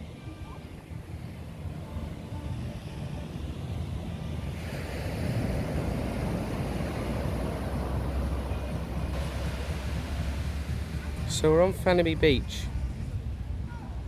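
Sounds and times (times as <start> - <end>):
sea surf washing ashore: 0.0 - 14.0
wind buffeting microphone: 0.0 - 14.0.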